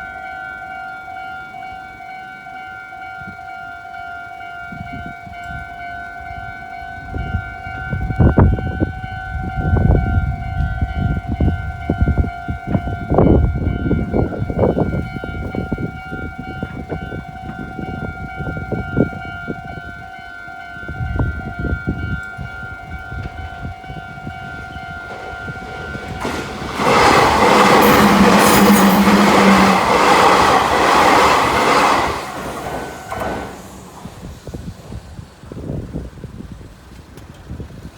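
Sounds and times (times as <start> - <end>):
level crossing warning bell: 0.0 - 34.0
rush of passing train: 0.0 - 37.9
train wheels clattering: 22.2 - 35.3.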